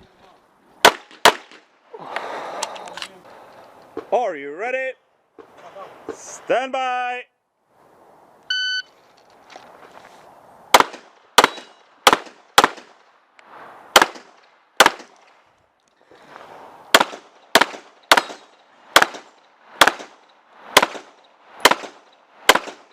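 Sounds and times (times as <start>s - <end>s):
shot timer beep: 8.5s - 8.9s
handgun shots: 10.8s - 12.9s, 17.0s - 20.1s.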